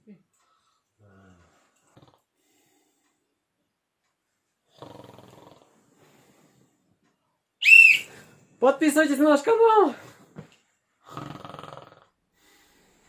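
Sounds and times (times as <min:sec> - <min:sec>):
faint breath: 0:00.4 - 0:03.3, 0:05.9 - 0:06.9, 0:12.4 - 0:13.0
man snoring: 0:01.0 - 0:02.3, 0:04.7 - 0:05.8, 0:11.0 - 0:12.2.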